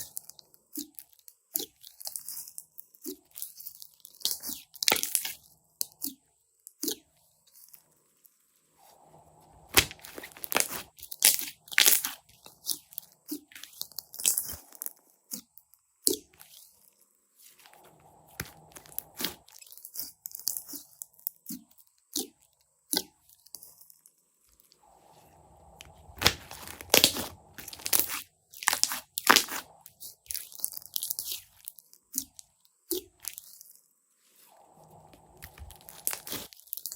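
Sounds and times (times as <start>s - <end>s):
slime squishing: 8.8s - 16.9s, 17.5s - 23.7s, 24.8s - 33.8s, 35.0s - 36.9s
slime crackling and clicking: 9.7s - 16.6s, 25.8s - 33.5s.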